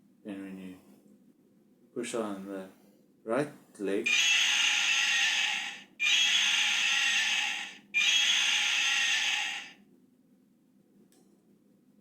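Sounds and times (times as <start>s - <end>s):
toy dinosaur roaring: 4.1s - 9.8s.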